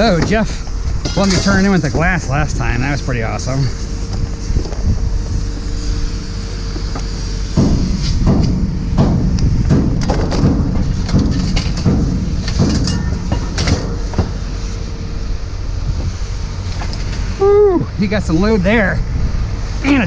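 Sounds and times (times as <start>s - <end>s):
scrap metal clanking: 0.0s - 2.3s, 6.7s - 15.2s
low engine rumble: 0.0s - 20.0s.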